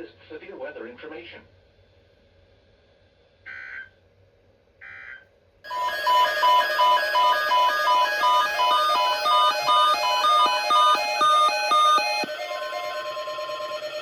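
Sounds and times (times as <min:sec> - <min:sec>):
data tone bursts: 0:04.8 - 0:14.0
electronic alert tone beeps: 0:04.8 - 0:14.0.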